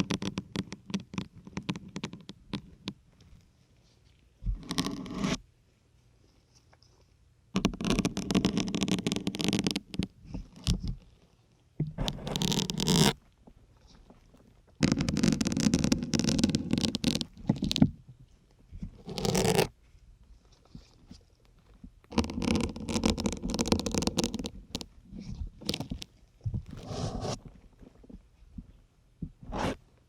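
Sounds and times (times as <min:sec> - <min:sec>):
needles scraping into sponge: 0:04.5 - 0:05.4, 0:12.0 - 0:13.2, 0:14.8 - 0:17.8, 0:18.8 - 0:19.8, 0:22.1 - 0:27.6, 0:29.4 - 0:29.9.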